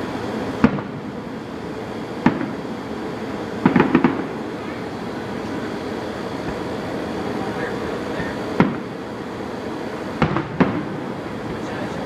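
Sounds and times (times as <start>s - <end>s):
steady background noise: 0.0s - 12.0s
fireworks exploding: 0.6s - 1.1s, 2.2s - 2.8s, 3.6s - 4.8s, 8.5s - 9.0s, 10.2s - 12.0s.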